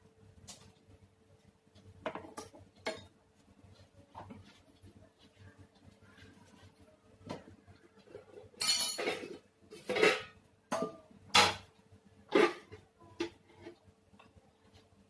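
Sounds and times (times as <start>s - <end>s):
dishes and utensils clinking: 7.2s - 11.7s, 12.3s - 13.8s.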